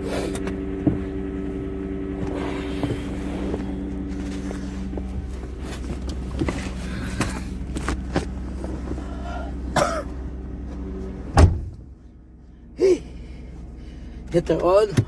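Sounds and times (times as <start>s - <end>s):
diesel engine idling: 0.0s - 15.0s
short cough-like sound: 9.8s - 10.1s
loud thump: 11.3s - 11.8s.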